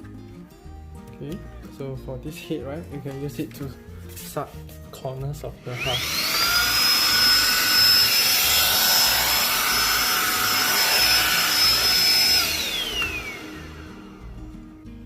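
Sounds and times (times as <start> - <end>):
vacuum motor whine: 5.7 - 14.5.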